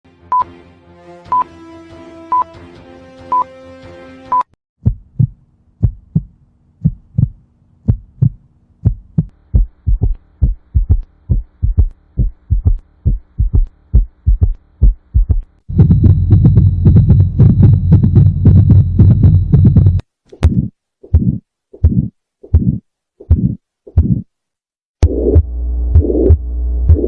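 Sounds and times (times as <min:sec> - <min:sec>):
music: 0:00.1 - 0:04.5
heartbeat through stethoscope: 0:04.8 - 0:24.3, 0:25.0 - 0:27.0.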